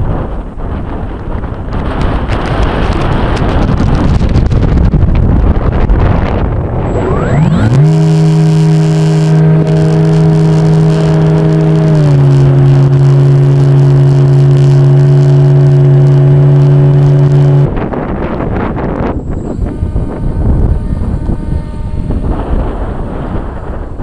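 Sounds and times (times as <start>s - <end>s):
model plane motor whine: 6.6s - 24.0s.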